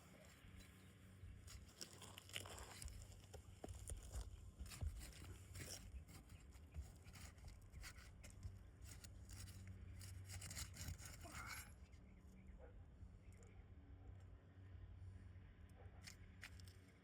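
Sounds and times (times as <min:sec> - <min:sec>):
pry bar scraping shingles: 0:01.5 - 0:11.8.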